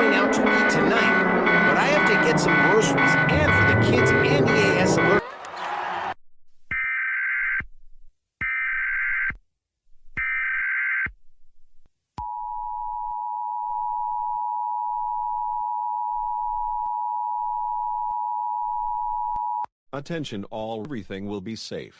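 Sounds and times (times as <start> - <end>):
digital data tone bursts: 0.0 - 5.2
two-tone attention signal: 0.0 - 5.3.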